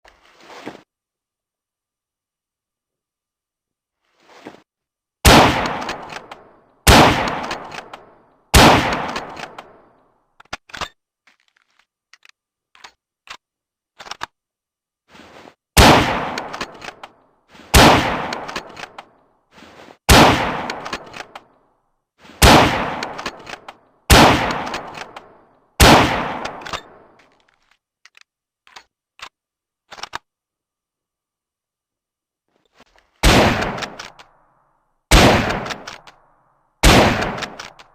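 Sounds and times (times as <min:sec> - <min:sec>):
rifle shots with ringing echo: 0:05.2 - 0:09.9, 0:15.8 - 0:17.0, 0:17.7 - 0:19.0, 0:20.1 - 0:21.4, 0:22.4 - 0:27.1, 0:33.2 - 0:34.2, 0:35.1 - 0:36.2, 0:36.8 - 0:37.8
small metallic clicks: 0:08.9 - 0:14.4, 0:26.4 - 0:30.3, 0:32.8 - 0:34.4, 0:35.5 - 0:36.4, 0:37.2 - 0:37.9.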